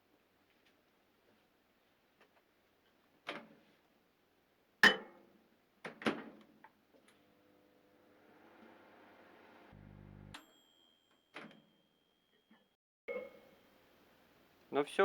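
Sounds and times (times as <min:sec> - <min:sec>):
microwave oven humming: 0:07.1 - 0:10.4.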